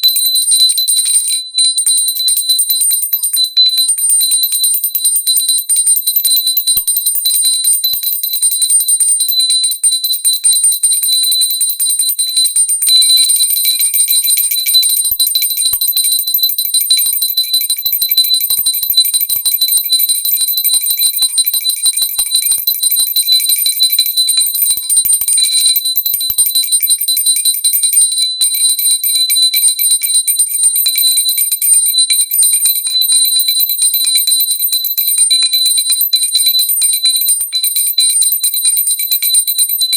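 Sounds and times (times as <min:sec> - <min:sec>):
bell ringing rapidly: 0:00.0 - 0:09.2, 0:10.0 - 0:22.8, 0:32.6 - 0:35.2, 0:35.8 - 0:39.9.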